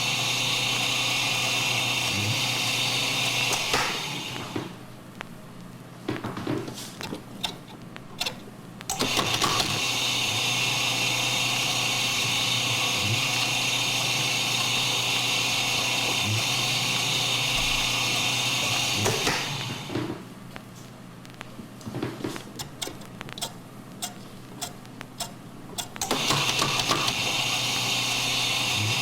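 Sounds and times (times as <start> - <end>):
small electric motor running: 0.0 - 4.6, 8.9 - 20.0, 22.6 - 29.0.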